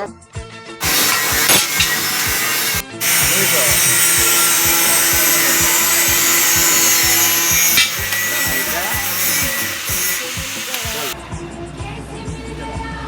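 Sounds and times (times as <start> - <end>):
power tool grinding metal: 0.8 - 11.2.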